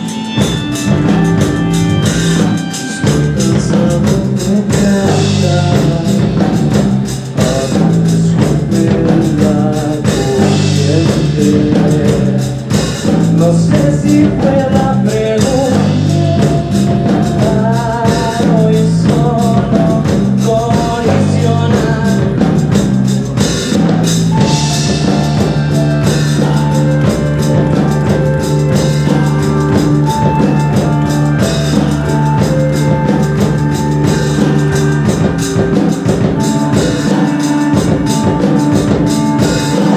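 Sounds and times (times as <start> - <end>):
bass guitar: 0.0 - 39.9
drum kit: 0.0 - 39.9
electric guitar: 0.0 - 39.9
person singing: 0.0 - 39.9.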